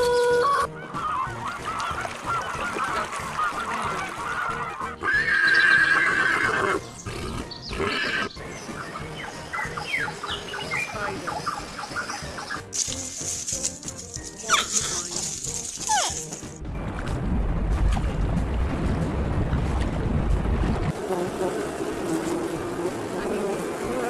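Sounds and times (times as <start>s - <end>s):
drawn-out bird call: 0.0s - 12.7s
flock of birds calling: 0.4s - 6.0s, 7.7s - 12.7s.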